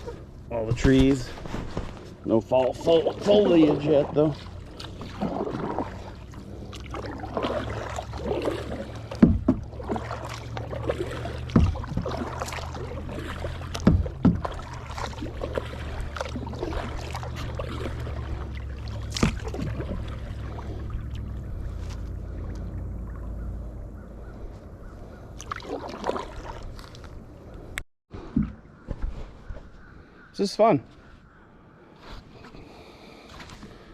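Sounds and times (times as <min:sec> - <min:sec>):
paddle strokes splashing water: 0:00.0 - 0:27.7
low steady rumble: 0:00.0 - 0:27.8
sharp knocks: 0:09.1 - 0:09.7, 0:13.7 - 0:14.6.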